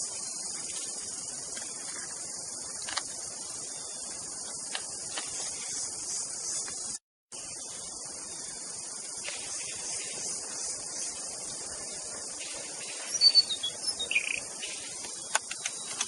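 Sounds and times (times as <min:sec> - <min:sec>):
insects chorus: 0:00.0 - 0:16.0.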